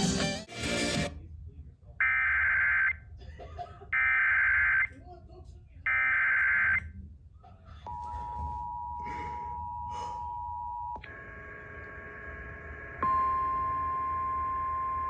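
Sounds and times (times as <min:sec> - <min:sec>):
two-tone attention signal: 0:13.0 - 0:15.0.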